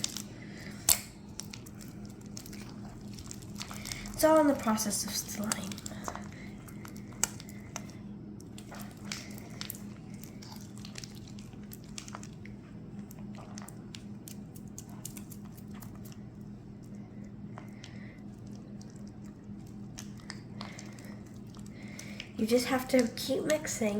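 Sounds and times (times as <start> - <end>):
faint steady hum: 0.0 - 23.9
slime squelching and clicking: 0.0 - 23.9.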